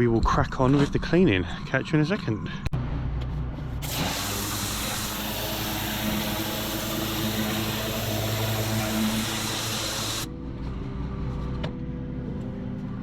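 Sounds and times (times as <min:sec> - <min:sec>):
pressure washer engine humming: 0:03.8 - 0:10.3
pressure washer jet spraying: 0:03.8 - 0:10.3.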